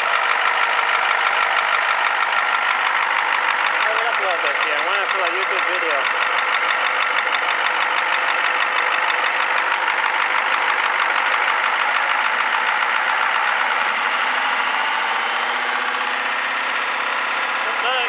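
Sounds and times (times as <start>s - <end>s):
diesel engine clattering: 0.0s - 18.0s.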